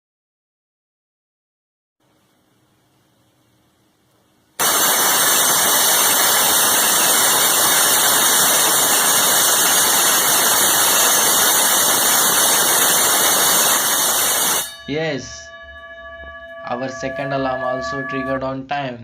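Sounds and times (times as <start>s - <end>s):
timer alarm ringing: 4.6s - 18.6s.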